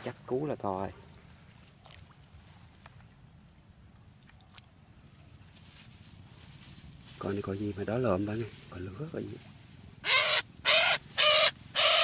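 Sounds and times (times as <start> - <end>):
rustles: 5.0 - 12.0.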